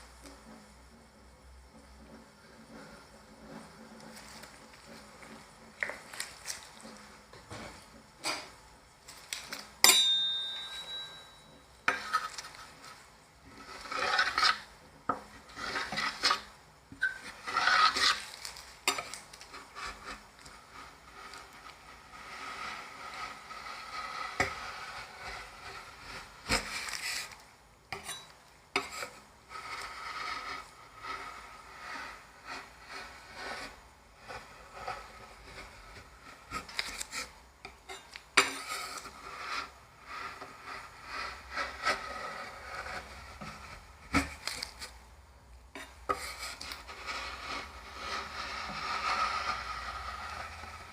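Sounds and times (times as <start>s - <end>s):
metal spatulas scraping steel pan: 9.5s - 45.0s, 45.8s - 50.9s
loud ringing metal clink: 9.8s - 11.6s.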